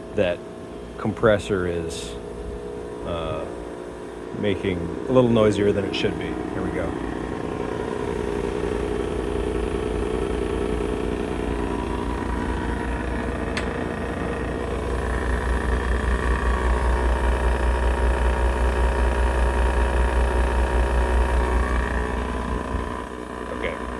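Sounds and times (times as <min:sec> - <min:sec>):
fan noise: 0:00.0 - 0:23.9
heat pump compressor hum: 0:00.0 - 0:23.9
higher pulsing tone: 0:01.1 - 0:19.9.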